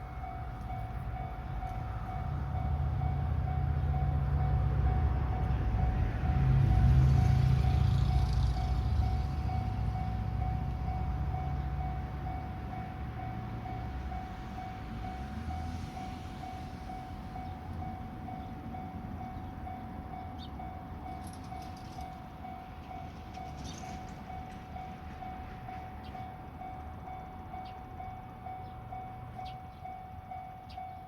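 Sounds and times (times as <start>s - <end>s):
level-crossing warning bell: 0.0s - 31.0s
passing train rumble: 0.0s - 31.0s.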